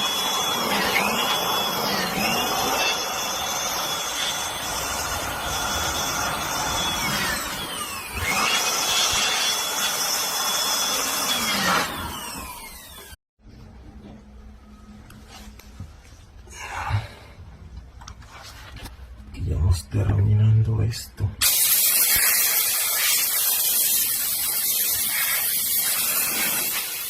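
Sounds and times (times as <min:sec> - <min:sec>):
high-speed motor whine with air rush: 0:00.0 - 0:13.1.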